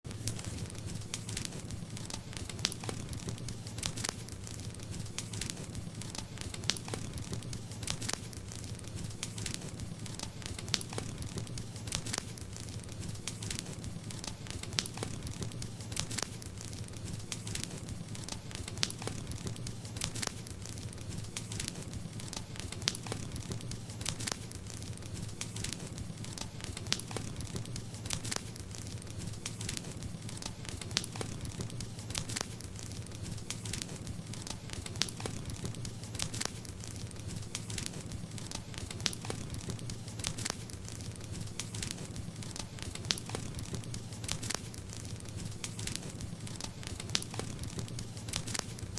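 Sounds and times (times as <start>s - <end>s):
campfire crackling and popping: 0.1s - 48.9s
low rumble of flames: 0.1s - 48.9s.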